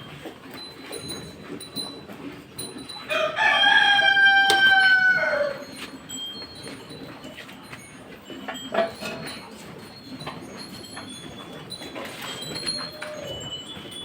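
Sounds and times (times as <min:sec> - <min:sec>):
rooster crowing: 0:03.1 - 0:05.7.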